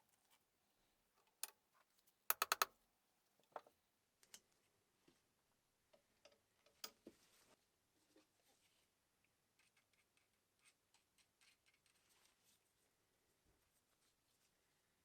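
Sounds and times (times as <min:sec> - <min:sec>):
small parts and tools clicking: 0:02.3 - 0:02.7.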